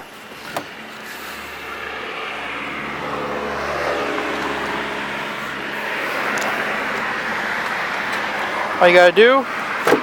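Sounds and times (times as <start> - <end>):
vehicle rushing noise: 0.3 - 10.0.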